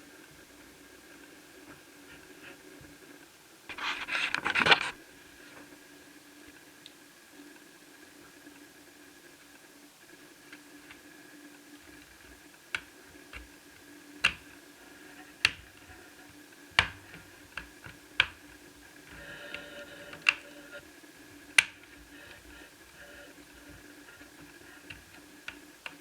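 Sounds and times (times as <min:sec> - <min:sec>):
faint steady hum: 0:00.0 - 0:26.0
plastic parts clicking: 0:11.9 - 0:13.6, 0:14.2 - 0:14.6, 0:15.2 - 0:20.8, 0:21.4 - 0:26.0.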